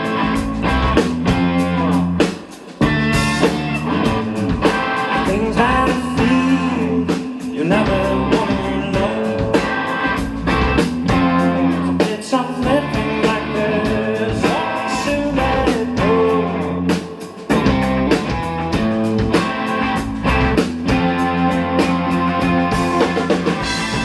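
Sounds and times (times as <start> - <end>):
drum beat: 0.0 - 24.0
electric guitars: 0.0 - 24.0.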